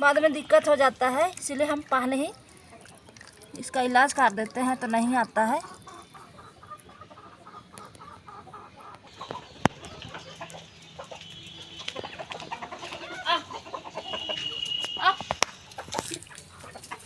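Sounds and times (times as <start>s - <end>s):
chickens clucking: 4.4s - 17.0s.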